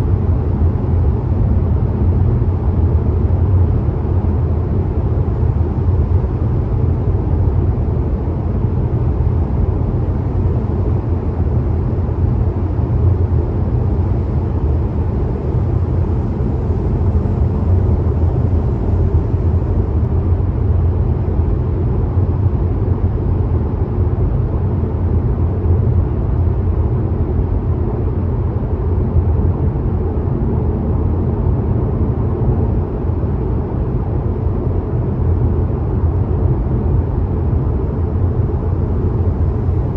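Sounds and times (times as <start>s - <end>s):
car road noise: 38.7s - 39.9s.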